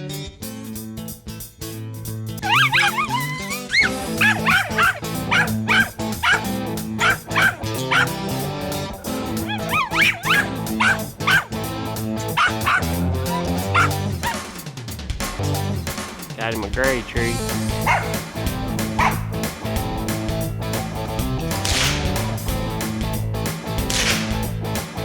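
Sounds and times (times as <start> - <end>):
guitar music: 2.3 - 14.4, 17.2 - 21.5
dog barking in high yelps: 2.4 - 8.2, 9.4 - 11.6, 12.4 - 14.4, 17.8 - 18.2, 19.0 - 19.3.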